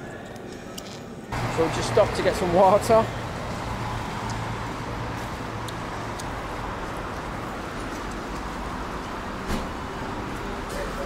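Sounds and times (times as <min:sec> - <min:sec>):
car engine idling: 0:01.3 - 0:09.0.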